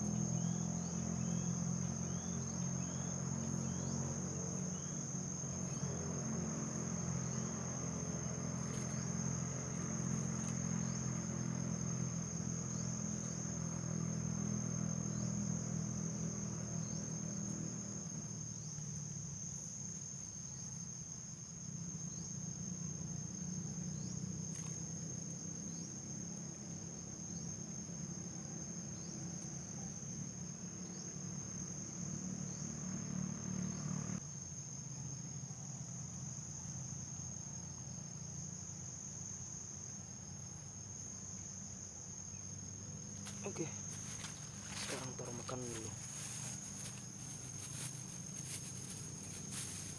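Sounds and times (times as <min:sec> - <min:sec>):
insects chirring: 0:00.0 - 0:49.9.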